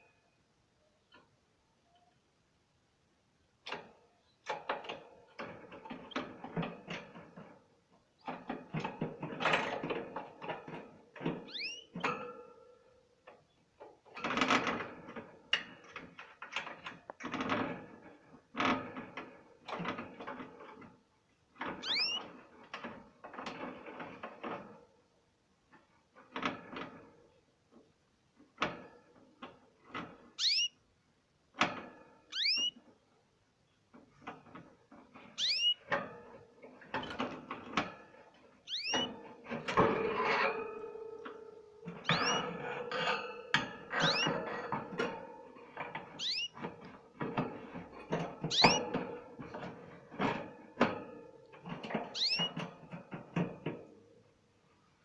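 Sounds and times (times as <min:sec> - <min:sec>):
bird chirp calls: 0:11.5 - 0:12.0, 0:21.8 - 0:22.2, 0:30.4 - 0:30.8, 0:32.3 - 0:32.8, 0:35.4 - 0:35.8, 0:38.7 - 0:39.1, 0:42.0 - 0:42.4, 0:44.0 - 0:44.3, 0:46.2 - 0:46.6, 0:48.5 - 0:48.8, 0:52.2 - 0:52.5.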